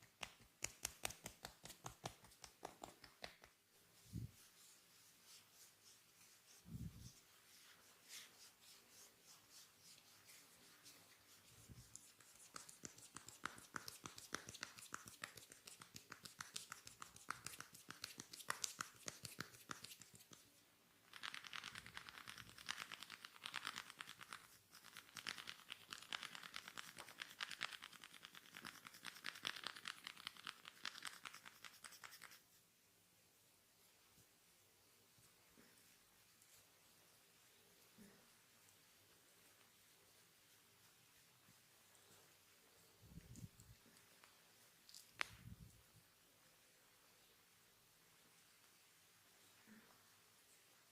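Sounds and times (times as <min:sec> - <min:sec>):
fingers scratching through hair: 0:00.1 - 0:20.4, 0:21.0 - 0:32.6.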